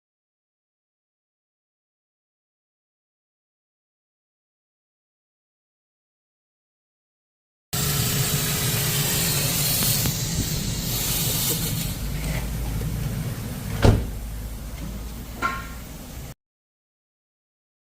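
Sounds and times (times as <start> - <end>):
mechanical hum with hiss: 7.8 - 16.4.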